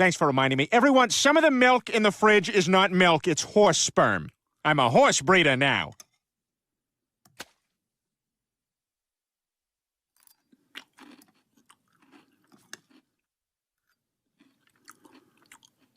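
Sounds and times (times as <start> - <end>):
chewing and crunching: 10.2 - 15.9.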